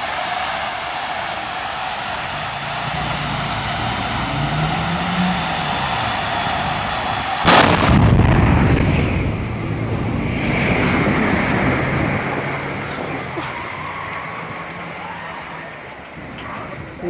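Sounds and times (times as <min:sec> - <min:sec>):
fire burning with rushing noise: 0:00.1 - 0:14.3
rumble: 0:01.6 - 0:13.2
loud explosion: 0:02.0 - 0:13.2.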